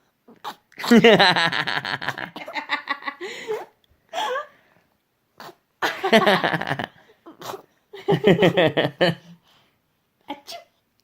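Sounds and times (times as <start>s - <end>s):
baby fake sneezing: 7.3s - 7.6s.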